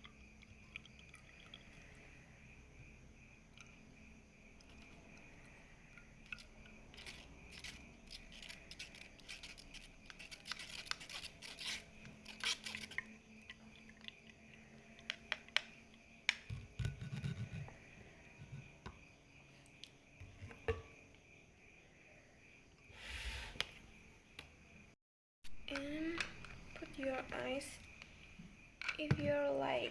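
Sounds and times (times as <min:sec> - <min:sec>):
spoon scraping pulp through strainer: 0:06.3 - 0:13.1.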